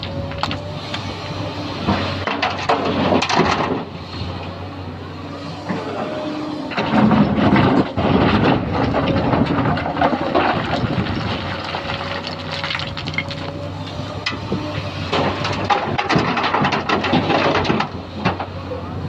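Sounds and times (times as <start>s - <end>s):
excavator diesel engine running: 0.0s - 19.0s
rocks clattering and scraping: 6.7s - 13.6s.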